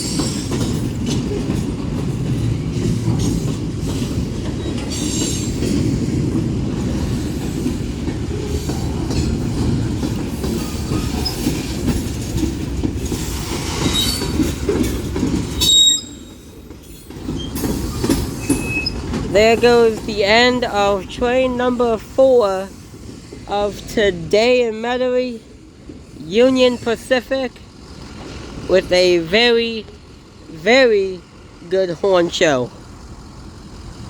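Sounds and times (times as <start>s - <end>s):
clickety-clack over rail joints: 0.0s - 34.0s
freight train wheels rumbling: 0.0s - 34.0s
high wheel squeal: 13.4s - 14.5s, 15.6s - 19.1s.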